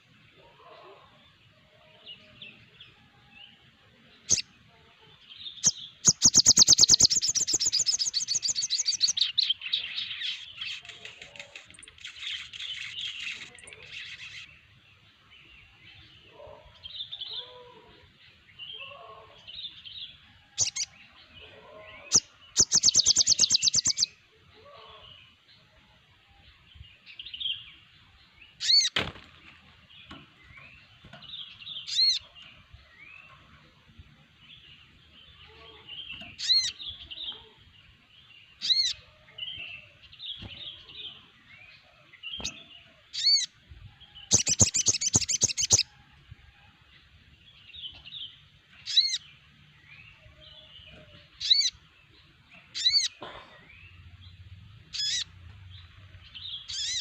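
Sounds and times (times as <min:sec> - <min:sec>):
birds chirping and whistling: 0:05.5 - 0:14.6, 0:22.0 - 0:24.2, 0:28.4 - 0:29.1, 0:30.0 - 0:33.5, 0:36.0 - 0:37.4, 0:38.5 - 0:45.9, 0:47.8 - 0:57.0
sharp sweeping bird calls: 0:05.6 - 0:14.5, 0:42.4 - 0:43.6, 0:44.3 - 0:45.9, 0:51.4 - 0:51.8, 0:54.9 - 0:55.4, 0:56.4 - 0:57.0
bird fast trills: 0:54.9 - 0:55.2.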